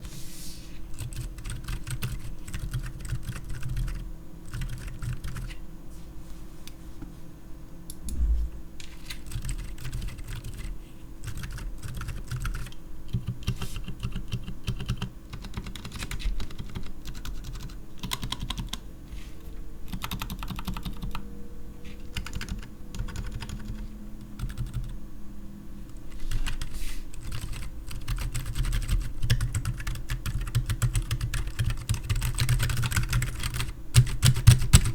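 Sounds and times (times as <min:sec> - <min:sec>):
mechanical keyboard typing: 0:01.0 - 0:05.6, 0:09.3 - 0:18.8, 0:19.9 - 0:21.2, 0:22.1 - 0:23.8, 0:24.4 - 0:24.9, 0:26.2 - 0:34.9
heavy thump: 0:08.1 - 0:08.7.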